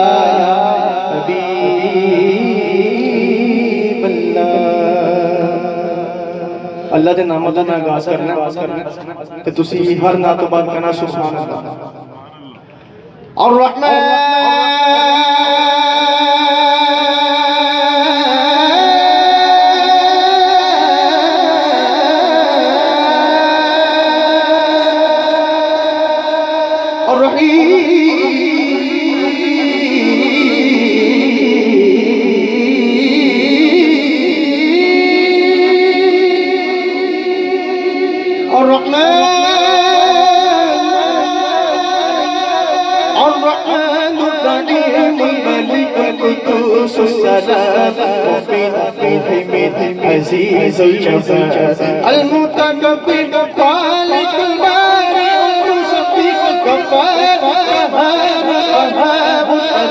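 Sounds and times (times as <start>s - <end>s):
man singing: 0.0s - 11.7s, 13.4s - 59.9s.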